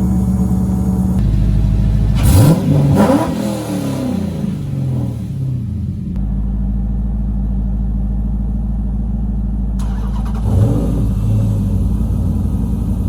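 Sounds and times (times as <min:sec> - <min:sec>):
car engine idling: 0:00.0 - 0:13.0
engine throttle blip: 0:09.7 - 0:13.0.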